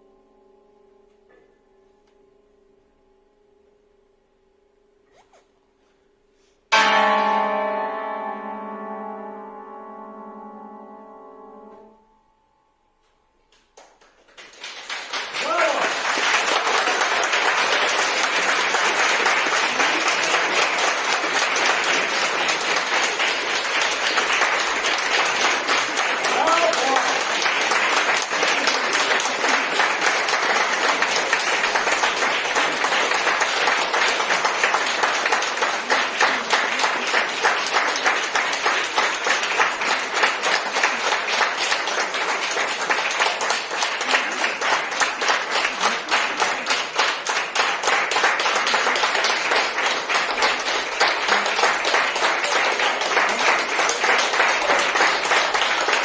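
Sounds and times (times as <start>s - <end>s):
audience applauding: 13.5s - 56.0s.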